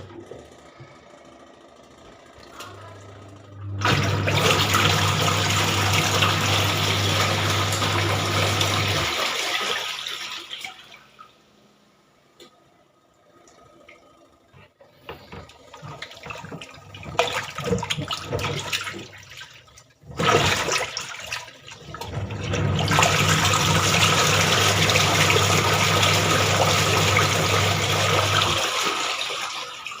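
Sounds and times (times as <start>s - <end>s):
washing machine motor hum: 0.0s - 30.0s
water churning: 3.8s - 11.1s, 13.4s - 30.0s
water splashing in tub: 3.8s - 11.3s, 14.6s - 30.0s.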